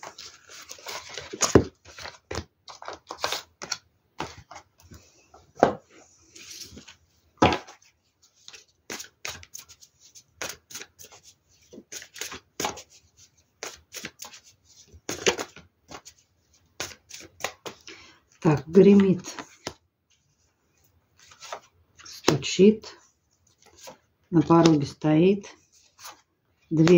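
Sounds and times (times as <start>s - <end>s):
cards being shuffled: 0.0s - 4.7s, 6.3s - 17.9s, 18.6s - 19.8s, 21.2s - 22.4s.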